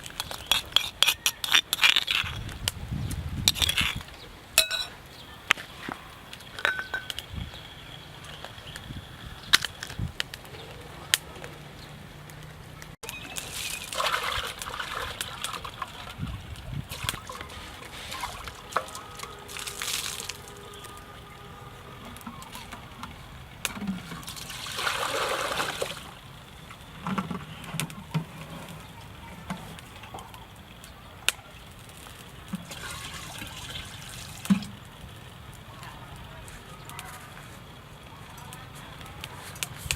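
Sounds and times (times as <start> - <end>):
water splashing and trickling: 13.0 - 39.8.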